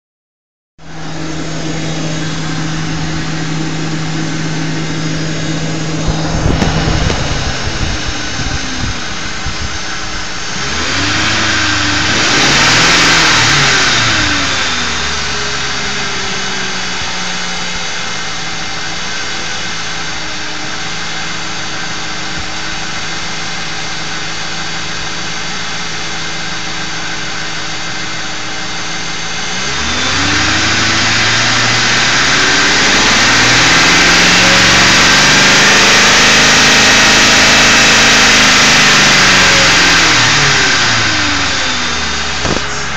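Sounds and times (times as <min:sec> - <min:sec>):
buzzing drone: 0:00.8 - 0:17.5, 0:29.4 - 0:42.9
car engine revving and idling: 0:00.8 - 0:42.9.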